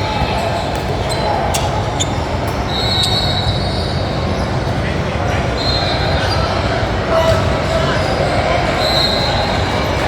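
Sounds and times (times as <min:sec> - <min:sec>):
hubbub of gym crowd: 0:00.0 - 0:10.0
shoes squeaking on gym floor: 0:00.4 - 0:04.4.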